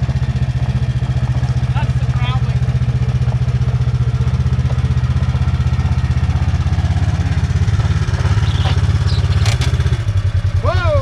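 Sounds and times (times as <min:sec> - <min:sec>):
utility vehicle engine idling: 0:06.8 - 0:10.4
sharp clicks: 0:08.0 - 0:10.2.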